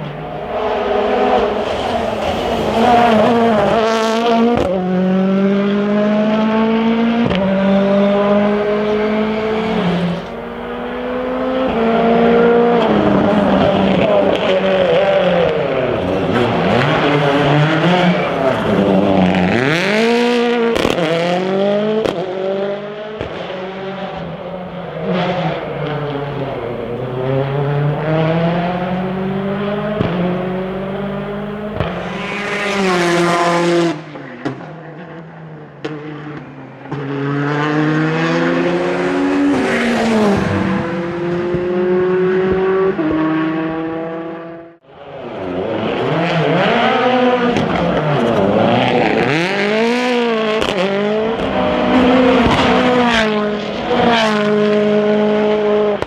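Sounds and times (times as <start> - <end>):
race car engines revving: 0.0 - 56.0.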